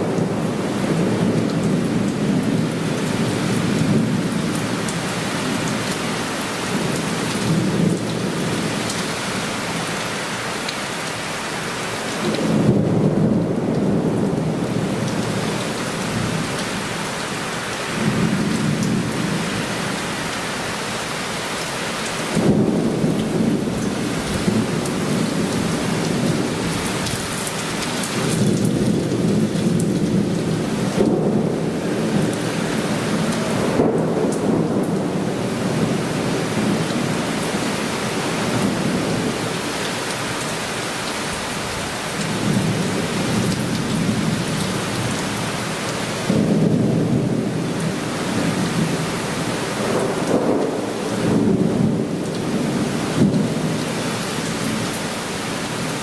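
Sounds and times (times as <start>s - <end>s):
heavy rain: 0.0s - 56.0s
thunder rumbling: 12.2s - 20.2s, 22.3s - 39.7s, 46.2s - 53.9s.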